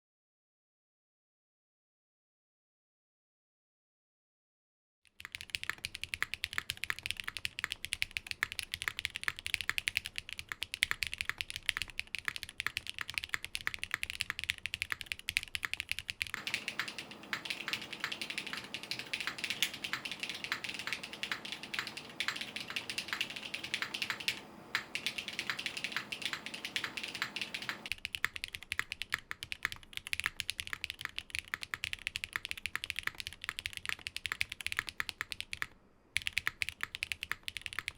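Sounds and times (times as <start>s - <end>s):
fast mechanical keyboard typing: 5.1s - 37.9s.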